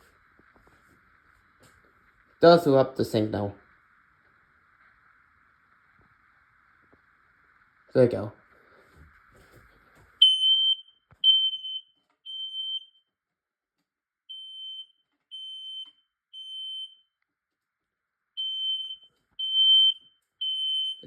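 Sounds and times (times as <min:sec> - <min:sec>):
smoke alarm beeping: 0:10.2 - 0:13.1, 0:14.3 - 0:17.2, 0:18.4 - 0:21.0.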